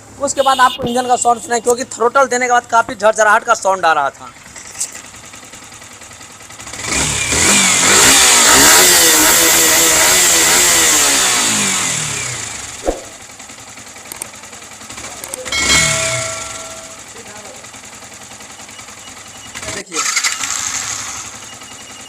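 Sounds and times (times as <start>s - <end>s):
motorcycle engine revving: 4.4s - 22.0s
sharp click: 12.8s - 13.2s.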